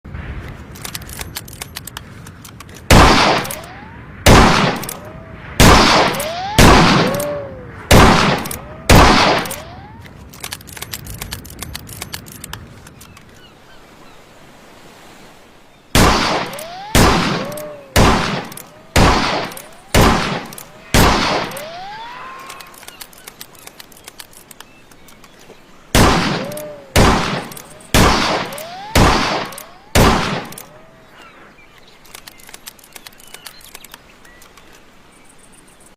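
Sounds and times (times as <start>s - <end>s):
gun handling clicks: 0.4s - 3.8s, 4.6s - 5.1s, 5.9s - 13.5s, 16.3s - 30.8s, 31.7s - 34.9s
revolver gunshots: 2.9s - 9.9s, 16.0s - 22.1s, 25.9s - 30.8s.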